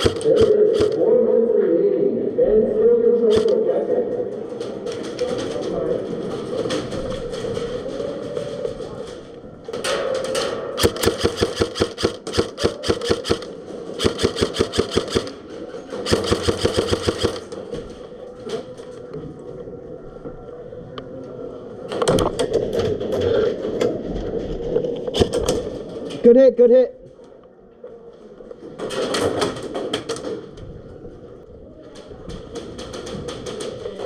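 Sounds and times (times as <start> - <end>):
airsoft gun firing bursts: 0.0 - 1.0, 3.3 - 3.6, 10.8 - 15.4, 16.0 - 17.6.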